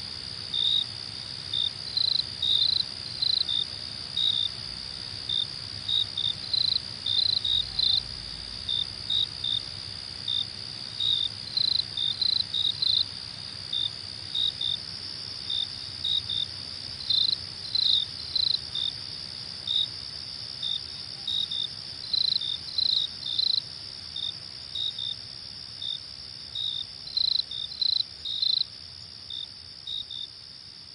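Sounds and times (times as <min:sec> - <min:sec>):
crickets trilling: 0:00.0 - 0:30.9
loud cricket chirps: 0:00.0 - 0:30.9.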